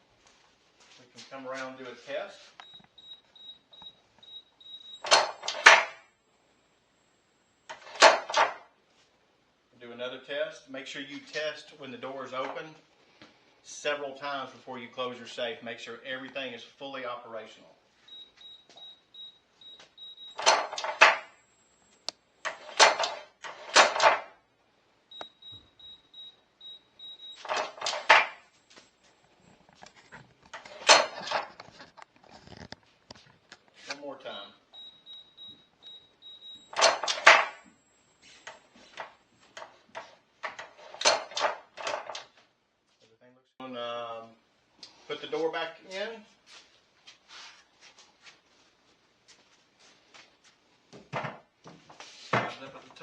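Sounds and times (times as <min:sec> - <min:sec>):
lock and door knocks and clunks: 0:05.0 - 0:06.0, 0:07.7 - 0:08.6, 0:20.4 - 0:21.3, 0:22.5 - 0:24.3, 0:27.5 - 0:28.4, 0:30.6 - 0:31.5, 0:36.7 - 0:37.6, 0:39.9 - 0:42.3.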